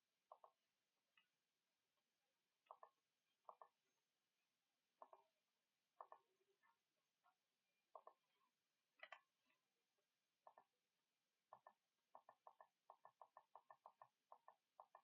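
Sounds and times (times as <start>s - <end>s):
computer mouse clicks: 0.3s - 0.6s, 2.6s - 3.8s, 5.0s - 5.3s, 6.0s - 6.4s, 7.9s - 8.4s, 9.0s - 9.4s, 10.4s - 10.8s, 11.5s - 15.0s.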